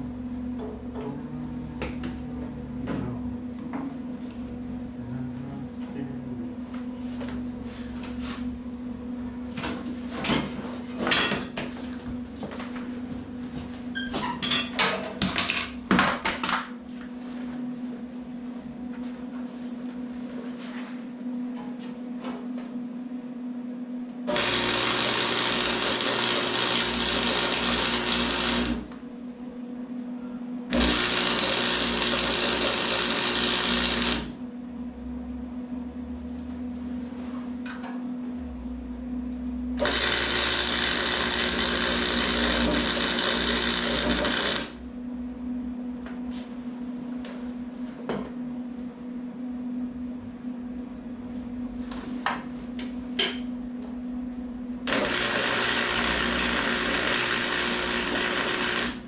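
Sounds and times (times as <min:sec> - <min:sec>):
welding arc crackling hiss: 0:24.3 - 0:28.9, 0:30.7 - 0:34.4, 0:39.8 - 0:44.8, 0:54.9 - 0:59.0.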